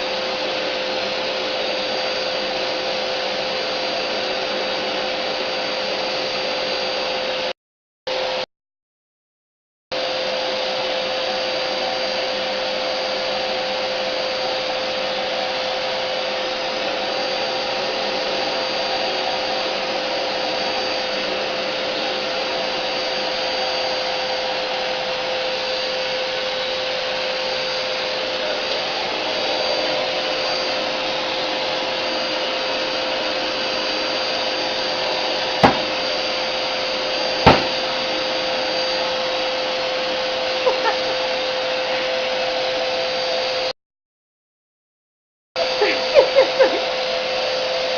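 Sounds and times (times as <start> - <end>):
vacuum cleaner motor humming: 0.0 - 7.5, 8.1 - 8.4, 10.0 - 43.7, 45.6 - 47.9.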